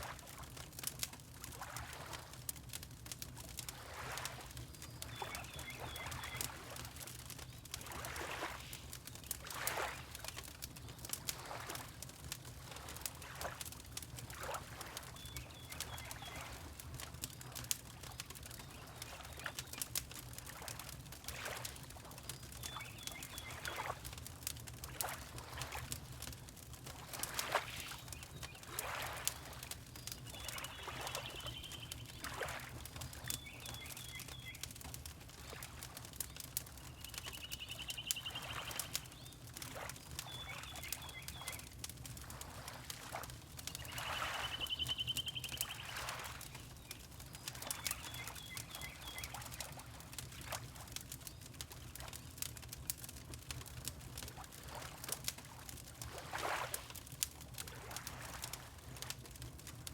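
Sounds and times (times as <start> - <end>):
fireplace crackling and popping: 0.0 - 59.9
water lapping: 1.5 - 2.5, 3.6 - 7.1, 7.7 - 10.4, 11.1 - 24.1, 24.8 - 50.9, 54.3 - 59.1
bird trilling call: 43.9 - 46.0.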